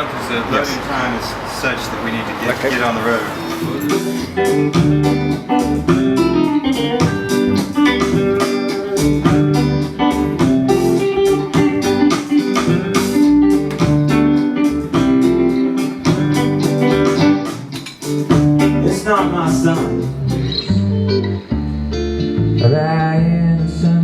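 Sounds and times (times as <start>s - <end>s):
picked guitar notes: 2.4s - 24.0s
steady bass line: 3.2s - 24.0s.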